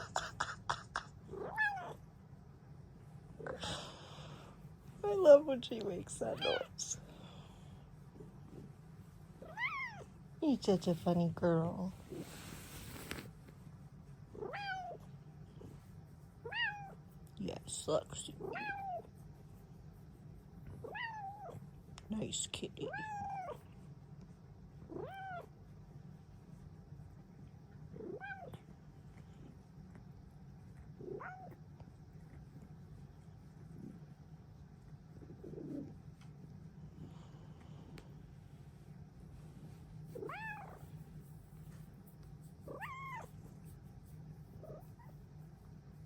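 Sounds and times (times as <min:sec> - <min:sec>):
low steady hum: 0:00.0 - 0:46.0
cat meowing: 0:01.4 - 0:02.0, 0:14.4 - 0:15.0, 0:18.4 - 0:19.0, 0:24.9 - 0:25.5, 0:40.2 - 0:40.8.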